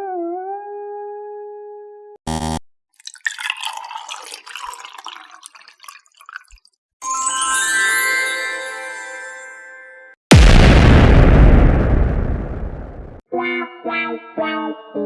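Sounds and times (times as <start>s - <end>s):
bright ringing chime: 7.0s - 10.1s.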